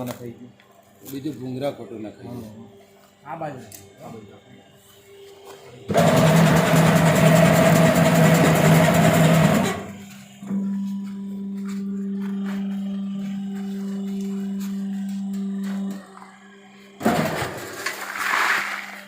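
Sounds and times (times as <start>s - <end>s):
baling machine running loudly: 5.6s - 19.0s
low electric hum: 9.7s - 19.0s.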